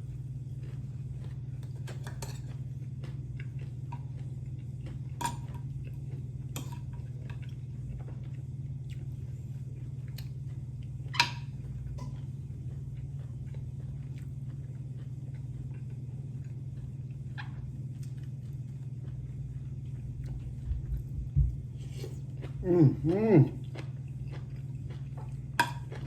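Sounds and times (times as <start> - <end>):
steady low hum: 0.0 - 26.0
cutlery clinking against dish: 1.9 - 2.6.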